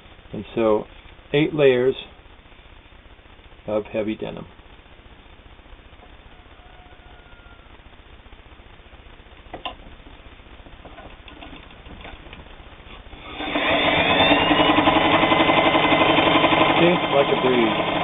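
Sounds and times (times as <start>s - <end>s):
sewing machine running: 13.2s - 18.0s.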